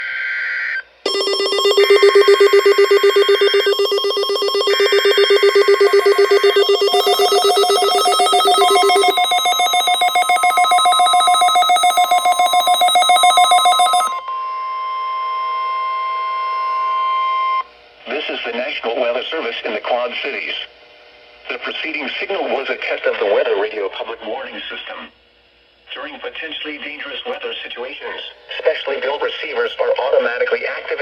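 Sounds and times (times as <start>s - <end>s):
pulsing alert alarm: 1.1s - 14.2s
raspy data bursts: 1.1s - 14.2s
steady tone: 1.1s - 14.2s.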